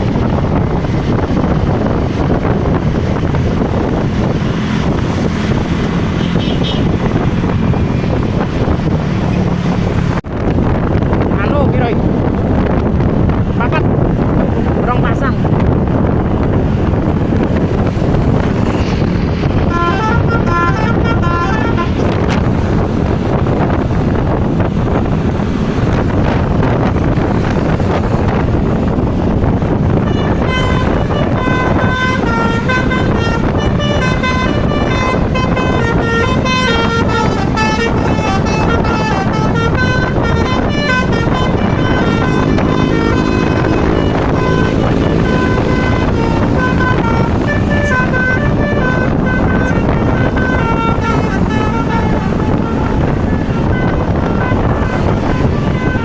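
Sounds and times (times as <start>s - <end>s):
wind and road noise: 0.0s - 56.0s
musical bus air horn: 6.1s - 7.2s, 18.6s - 23.8s, 29.8s - 56.0s.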